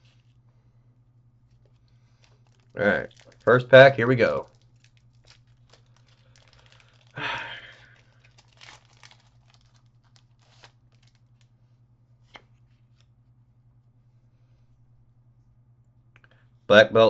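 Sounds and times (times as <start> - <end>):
wrapper crinkling: 1.5 - 11.5
foil wrapper ripping: 1.6 - 11.5.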